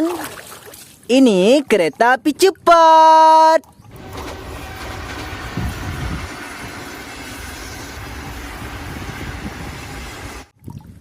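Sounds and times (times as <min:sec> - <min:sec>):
train rushing rumble: 0:03.9 - 0:10.5.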